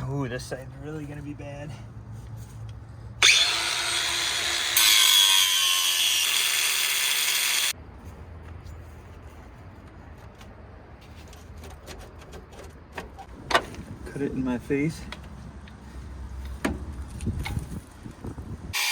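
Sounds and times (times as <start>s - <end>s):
angle grinder whining: 3.2s - 7.8s
grinder disc grinding steel: 3.2s - 7.8s.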